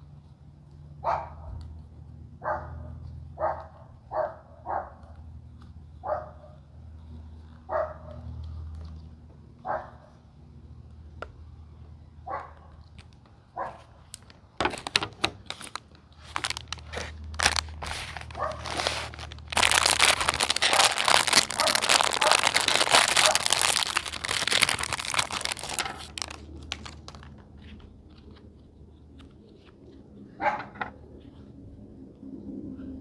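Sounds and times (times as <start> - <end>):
plastic packaging crinkling: 14.0 - 27.5.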